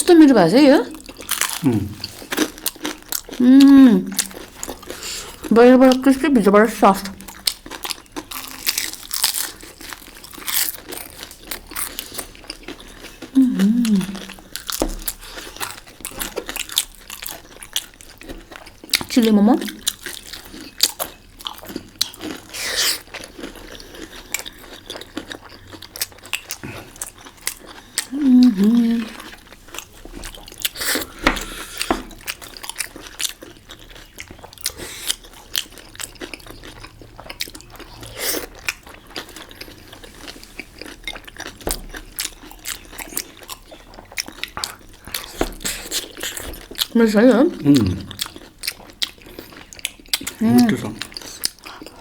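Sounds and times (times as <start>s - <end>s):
wet chewing and crunching: 0.0s - 52.0s
person humming: 1.6s - 2.1s, 13.4s - 14.3s, 28.1s - 29.2s, 47.6s - 48.1s.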